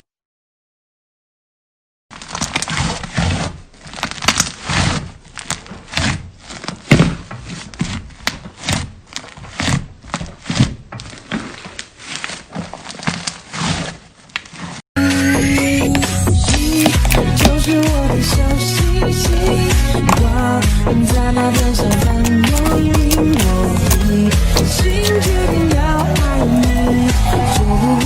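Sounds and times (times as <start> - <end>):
slime squishing by hand: 2.1 - 14.8, 15.8 - 28.0
sharp clicks and pops: 15.9 - 17.8, 21.5 - 26.2.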